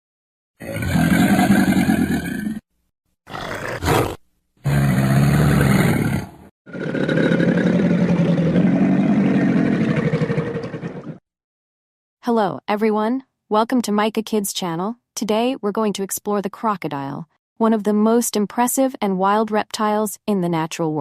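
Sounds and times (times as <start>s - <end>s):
animal roars: 0.6s - 2.6s, 3.3s - 11.2s.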